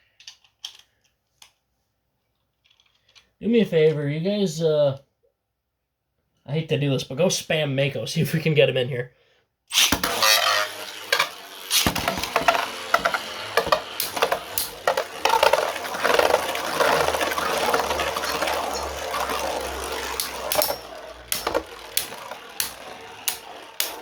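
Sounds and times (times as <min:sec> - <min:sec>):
spinning tops clicking: 0:09.7 - 0:24.0
spinning tops whirring and rattling: 0:09.7 - 0:24.0.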